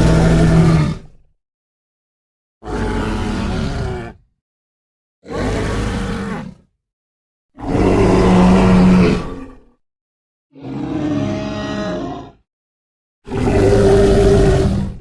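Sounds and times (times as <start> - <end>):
low loud creature calls: 0.0 - 1.1, 10.6 - 12.4.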